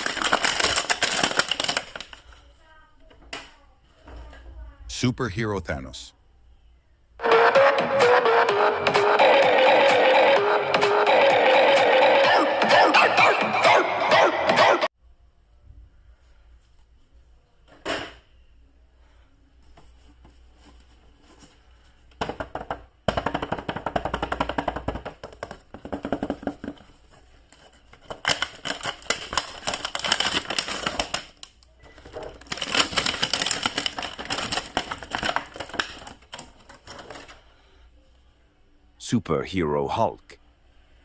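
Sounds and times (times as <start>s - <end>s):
plastic packaging crackling: 0.0s - 2.5s, 27.5s - 37.4s.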